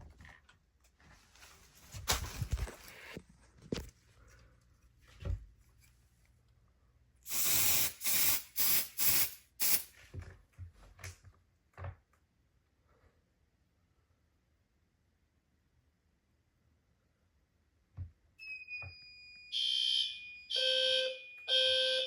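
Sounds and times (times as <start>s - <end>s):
aerosol spray can hissing: 7.3s - 9.9s.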